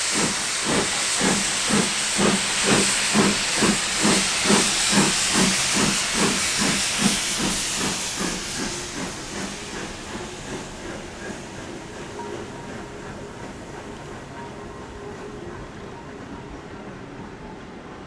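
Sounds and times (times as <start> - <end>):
steam hissing: 0.0 - 14.3
steam locomotive exhaust beats: 0.0 - 17.7.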